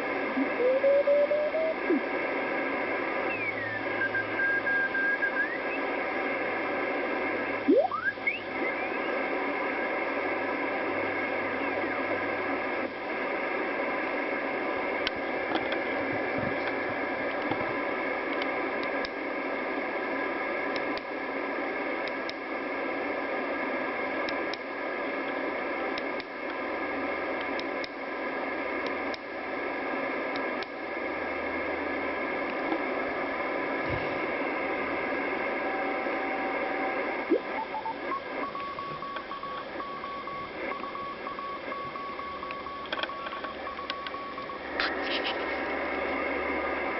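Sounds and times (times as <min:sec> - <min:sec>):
faint steady tones: 0:00.0 - 0:46.9
radio static hiss: 0:00.0 - 0:46.9
scattered clicks: 0:42.4 - 0:45.4.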